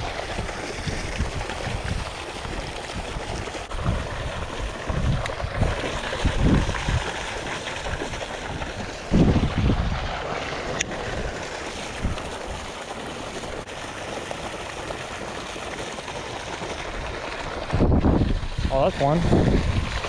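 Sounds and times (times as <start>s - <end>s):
wind buffeting microphone: 0.0s - 10.2s, 10.9s - 12.7s, 16.9s - 20.0s.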